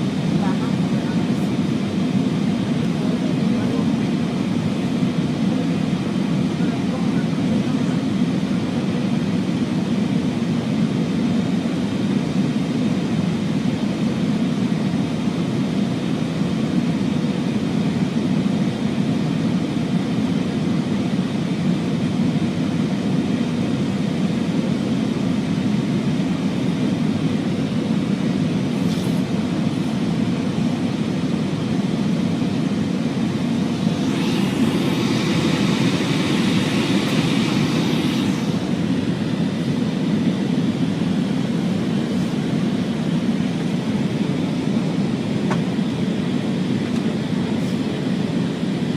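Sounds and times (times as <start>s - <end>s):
airliner cockpit engine drone: 0.0s - 48.9s.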